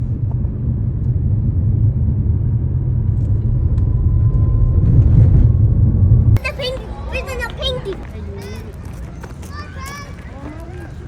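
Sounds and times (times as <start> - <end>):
faint steady whine: 0.0 - 6.5
vehicle low rumble: 0.0 - 11.0.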